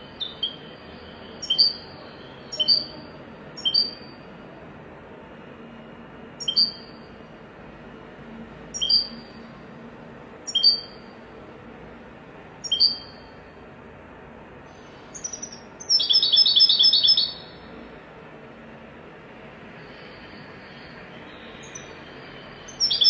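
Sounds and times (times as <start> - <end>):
rapid bird trill: 0.0 - 4.2, 6.4 - 7.1, 8.7 - 9.4, 10.5 - 11.1, 12.6 - 13.3, 14.8 - 17.7, 20.0 - 23.0
goldfinch high calls: 1.4 - 3.0, 3.6 - 4.0, 6.4 - 7.0, 8.8 - 9.2, 10.5 - 11.0, 12.6 - 13.2, 15.2 - 17.6, 22.7 - 23.0.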